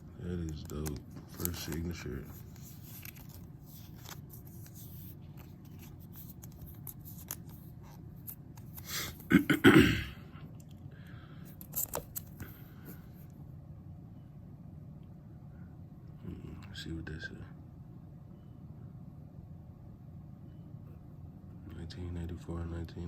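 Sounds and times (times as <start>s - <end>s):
trading cards being handled: 0.3s - 9.3s, 11.5s - 13.1s.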